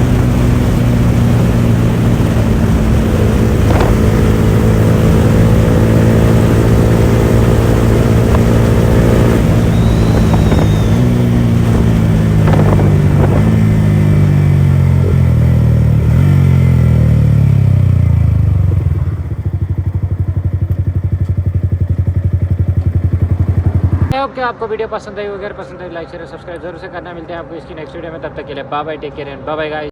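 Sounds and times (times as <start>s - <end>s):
motorcycle engine running: 0.0s - 24.2s.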